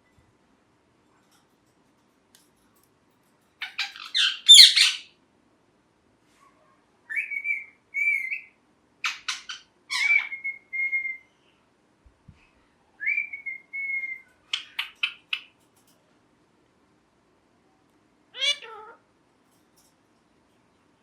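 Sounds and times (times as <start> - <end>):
parrot harsh calls: 3.6 - 5.1, 7.1 - 11.2, 18.3 - 19.0
parrot whistling: 7.1 - 8.5, 9.9 - 11.3, 13.0 - 14.3.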